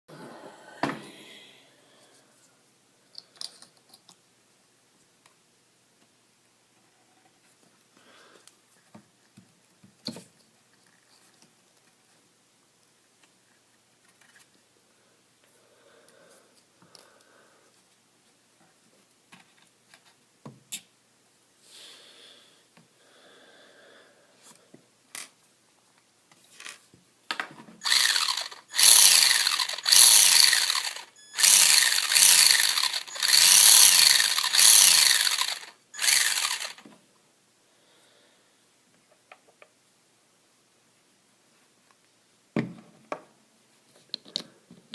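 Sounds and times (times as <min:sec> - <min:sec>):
toy truck motor whining and grinding: 0:27.8 - 0:36.8.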